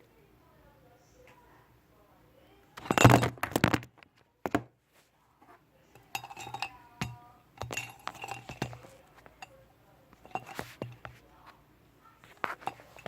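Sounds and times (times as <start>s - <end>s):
small hard objects clinking: 2.8s - 4.6s, 6.0s - 9.5s, 10.2s - 11.1s.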